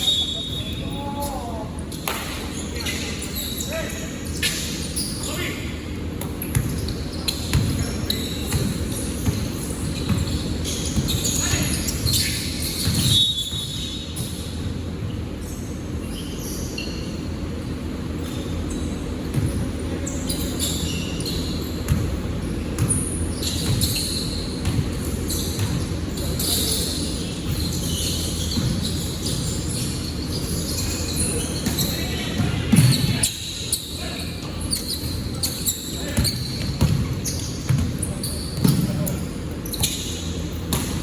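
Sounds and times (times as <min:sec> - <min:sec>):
sneakers squeaking: 0:00.0 - 0:41.0
basketball bouncing on court: 0:06.2 - 0:14.4, 0:19.2 - 0:19.8, 0:21.4 - 0:26.6, 0:27.3 - 0:33.6, 0:34.8 - 0:41.0.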